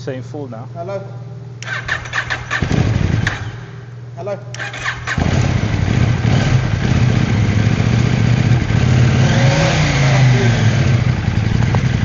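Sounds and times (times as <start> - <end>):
motorcycle engine revving high: 1.6 - 3.8, 4.6 - 12.0.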